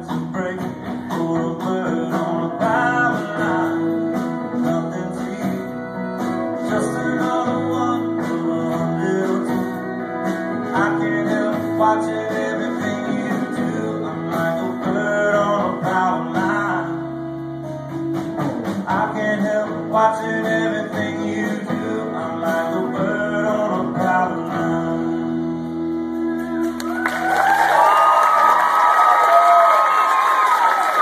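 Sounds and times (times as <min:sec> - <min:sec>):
acoustic guitar playing: 0:00.0 - 0:27.4
wordless singing: 0:00.4 - 0:17.0
audience applause and cheering: 0:26.4 - 0:31.0.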